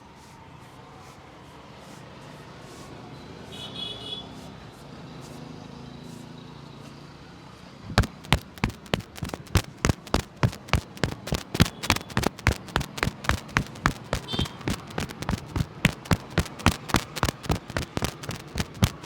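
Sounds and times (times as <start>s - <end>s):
street background noise: 8.0s - 19.0s.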